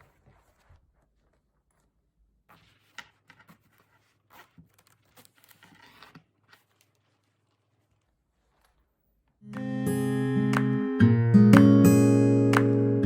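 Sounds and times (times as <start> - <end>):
faint rustling and scraping: 0.0 - 9.4.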